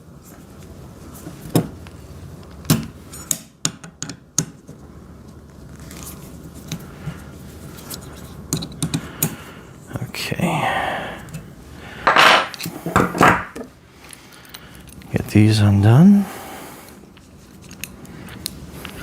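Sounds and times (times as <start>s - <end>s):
metal parts and tools clinking: 12.1s - 15.1s.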